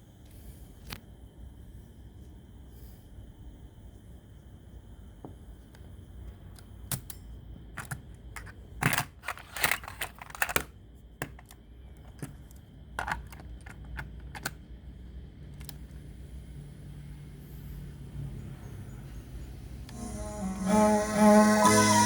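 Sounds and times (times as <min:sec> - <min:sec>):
small hard parts clicking and clattering: 0:06.9 - 0:14.6.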